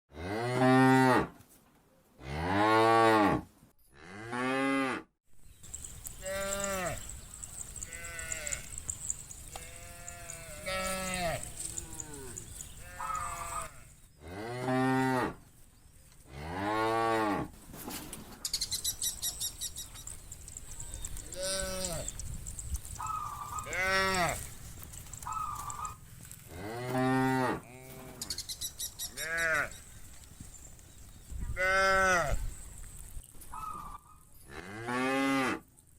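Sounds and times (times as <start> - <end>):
cattle mooing: 6.2 - 15.4, 23.1 - 24.5.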